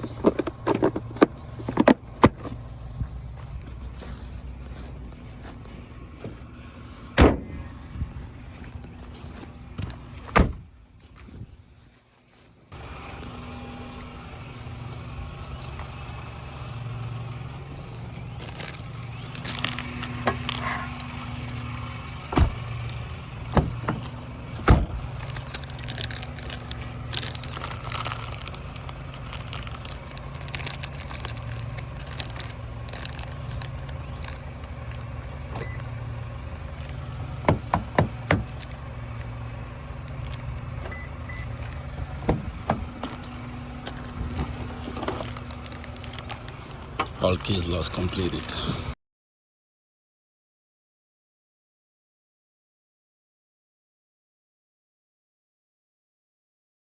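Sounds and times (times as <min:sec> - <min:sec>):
sharp clicks and knocks: 0:00.0 - 0:02.6, 0:37.4 - 0:39.3
car engine idling: 0:00.0 - 0:49.0.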